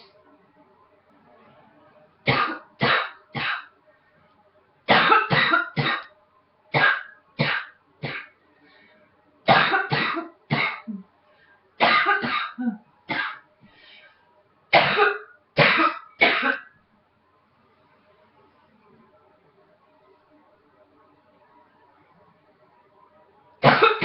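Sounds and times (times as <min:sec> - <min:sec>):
woman coughing: 0:09.5 - 0:11.0, 0:11.8 - 0:13.4, 0:14.8 - 0:16.7, 0:23.6 - 0:24.0.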